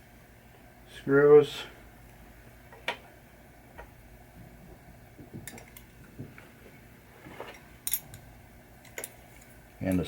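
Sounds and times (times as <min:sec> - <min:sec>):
metal parts clinking on workbench: 0:07.8 - 0:08.2.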